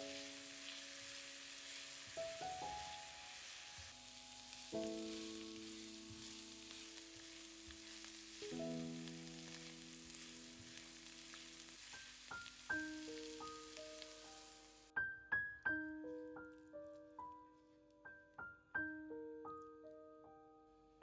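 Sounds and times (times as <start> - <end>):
food sizzling in hot oil: 0.0 - 14.9.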